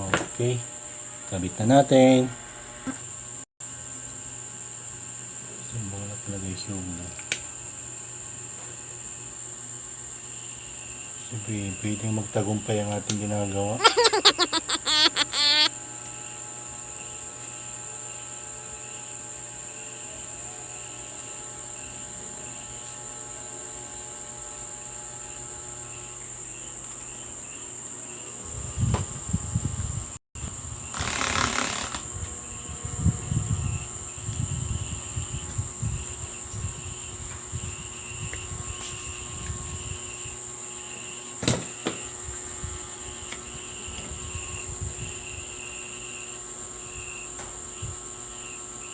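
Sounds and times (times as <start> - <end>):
insect chirring: 9.1 - 15.7, 30.4 - 32.7.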